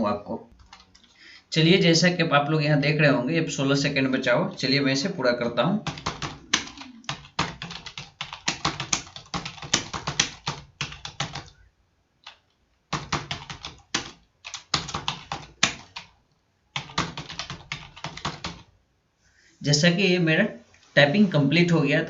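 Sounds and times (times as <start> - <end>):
keyboard typing clicks: 5.9 - 11.6, 12.2 - 16.1.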